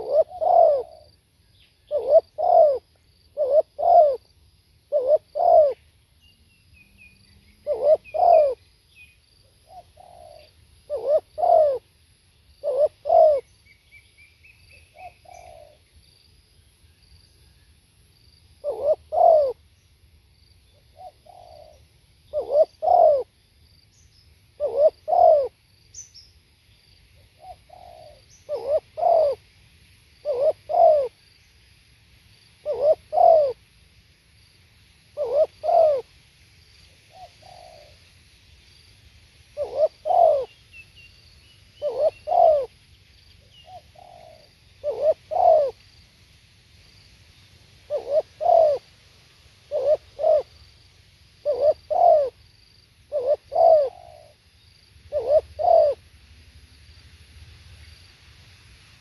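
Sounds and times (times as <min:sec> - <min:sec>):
dove cooing: 0:00.0 - 0:01.1, 0:01.9 - 0:04.3, 0:04.9 - 0:05.8, 0:07.6 - 0:08.6, 0:09.6 - 0:11.9, 0:12.6 - 0:13.5, 0:14.9 - 0:15.8, 0:18.6 - 0:19.6, 0:21.0 - 0:23.3, 0:24.6 - 0:25.6, 0:27.4 - 0:29.4, 0:30.2 - 0:31.2, 0:32.6 - 0:33.6, 0:35.2 - 0:36.1, 0:37.1 - 0:38.0, 0:39.6 - 0:40.5, 0:41.8 - 0:42.8, 0:43.6 - 0:45.8, 0:47.9 - 0:48.9, 0:49.7 - 0:50.6, 0:51.4 - 0:52.4, 0:53.1 - 0:54.4, 0:55.1 - 0:56.0
small bird chirping: 0:00.0 - 0:04.3, 0:04.9 - 0:11.8, 0:12.4 - 0:15.8, 0:20.6 - 0:23.3, 0:23.9 - 0:29.4, 0:35.2 - 0:36.1, 0:39.6 - 0:46.0, 0:46.9 - 0:48.8, 0:51.4 - 0:56.0.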